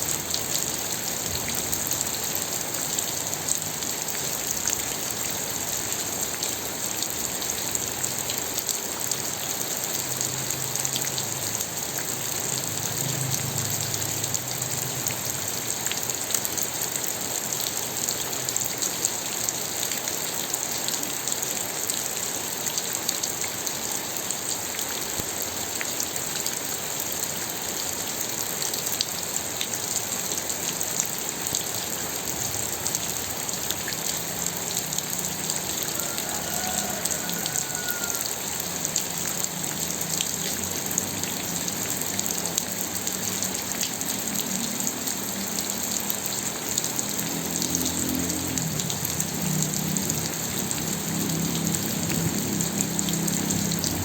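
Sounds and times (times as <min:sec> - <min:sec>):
rain falling: 0:00.0 - 0:54.0.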